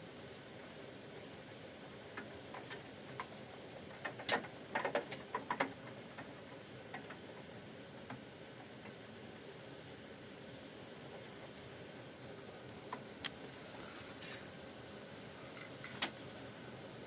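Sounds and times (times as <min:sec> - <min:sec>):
faint steady hiss: 0:00.0 - 0:17.0
hail tapping on window: 0:00.8 - 0:09.6.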